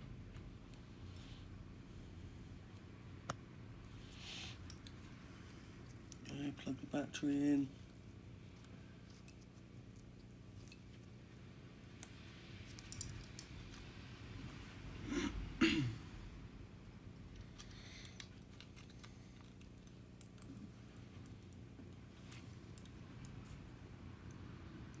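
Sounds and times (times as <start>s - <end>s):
person clearing throat: 15.1s - 16.0s.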